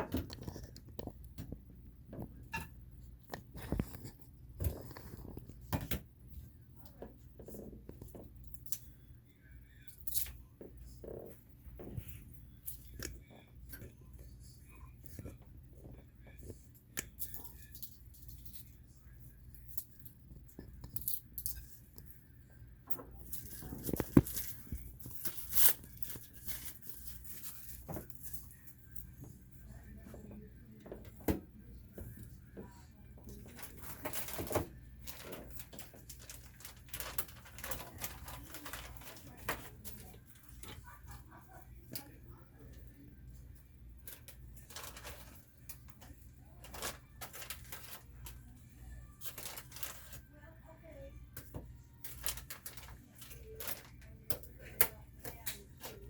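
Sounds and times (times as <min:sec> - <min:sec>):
packaging rustling: 0:33.4 - 0:40.1, 0:46.6 - 0:48.4, 0:49.2 - 0:50.2.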